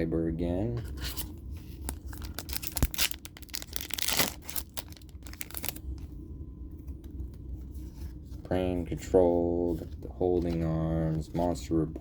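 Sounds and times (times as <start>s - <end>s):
cards being handled: 0.8s - 6.0s
foil wrapper crinkling and tearing: 1.8s - 6.0s.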